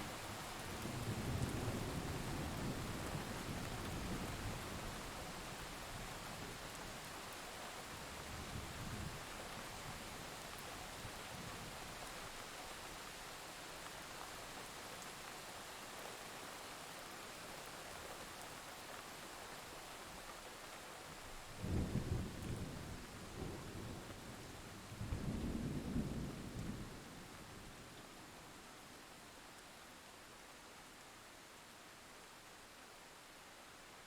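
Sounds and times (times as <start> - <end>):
steady rain falling: 0.0 - 34.0.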